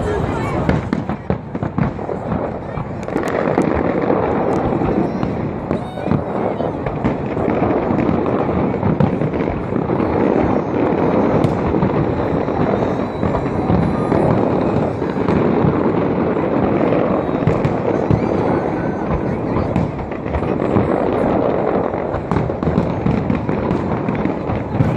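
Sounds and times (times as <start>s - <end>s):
fireworks booming and crackling: 0.0s - 24.9s.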